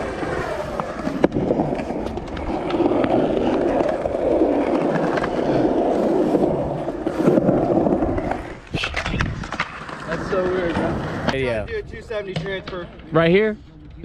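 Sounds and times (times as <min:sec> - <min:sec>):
skateboard wheels rolling on concrete: 0:00.0 - 0:14.0
sharp skateboard clack: 0:08.2 - 0:11.4.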